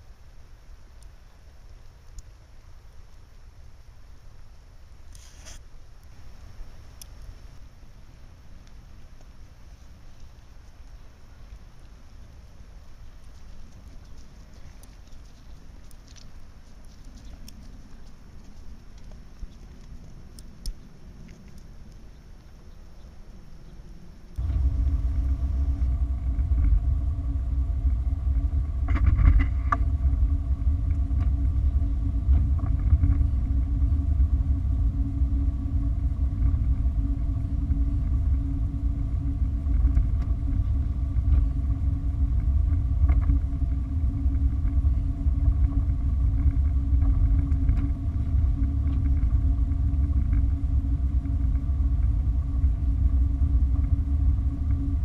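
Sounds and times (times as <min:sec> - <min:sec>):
faint steady hum: 0:00.0 - 0:55.0
car engine and road noise: 0:24.4 - 0:55.0.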